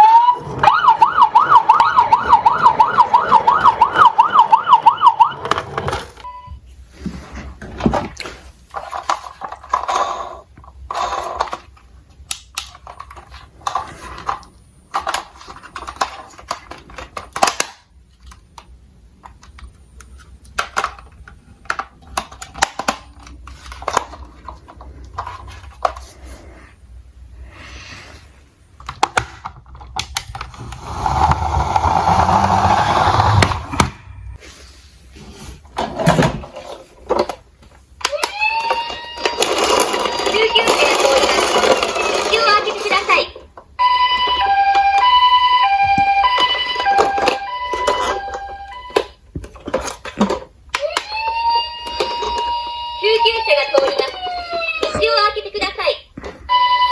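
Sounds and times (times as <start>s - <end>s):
toy cars clicking and clattering: 8.6s - 26.1s, 36.6s - 43.6s, 44.2s - 55.8s
rattling rush: 30.4s - 34.4s.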